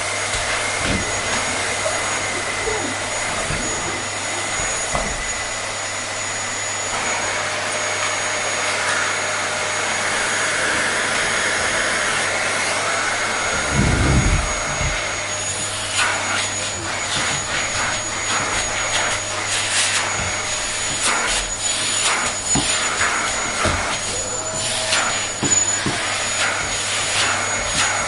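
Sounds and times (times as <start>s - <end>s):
vacuum cleaner running: 0.0s - 28.0s
low bump: 13.5s - 15.1s.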